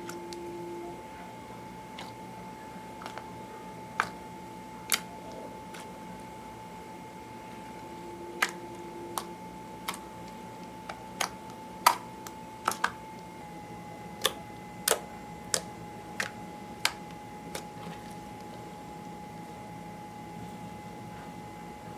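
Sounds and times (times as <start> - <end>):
slime clicking and popping: 3.0 - 3.3, 4.0 - 4.2, 4.9 - 5.9, 8.4 - 13.0, 14.2 - 18.6.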